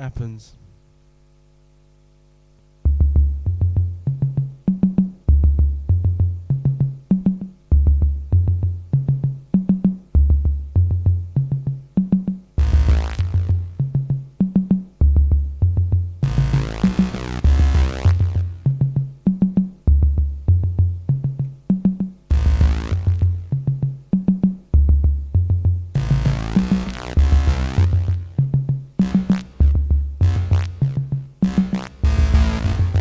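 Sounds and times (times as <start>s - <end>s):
faint low hum: 0.0s - 33.0s
drum hits: 2.8s - 33.0s
synth bass line: 12.6s - 14.0s, 15.0s - 19.0s, 22.3s - 23.7s, 24.8s - 33.0s.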